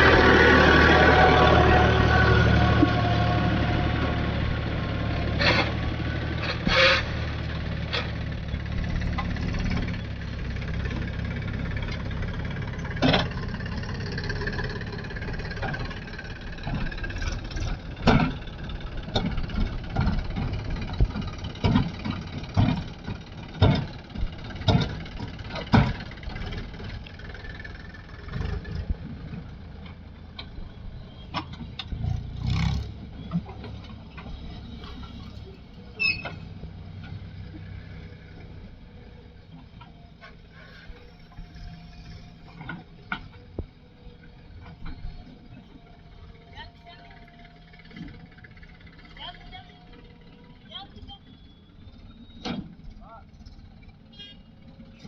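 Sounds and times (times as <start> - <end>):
diesel engine running: 0.0 - 55.0
knocks and clanks: 10.8 - 27.1.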